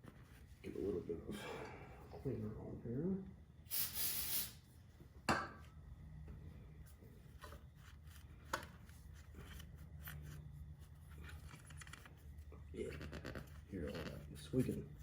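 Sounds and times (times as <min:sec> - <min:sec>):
short hiss: 0:03.7 - 0:04.6.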